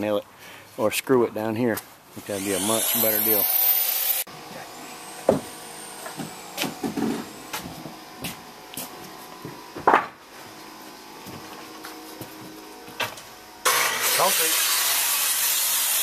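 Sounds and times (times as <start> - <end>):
wooden boards knocking: 9.8 - 10.2.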